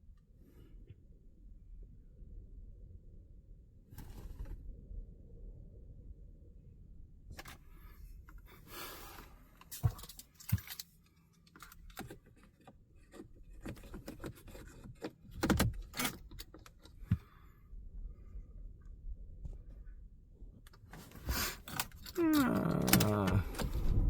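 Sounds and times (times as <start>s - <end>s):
low rumble: 0.9s - 8.6s, 22.2s - 24.0s
light clicks and rustles: 7.3s - 17.6s.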